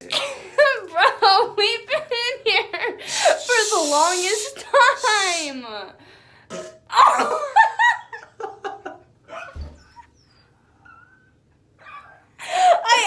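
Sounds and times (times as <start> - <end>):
person laughing: 7.0 - 10.1.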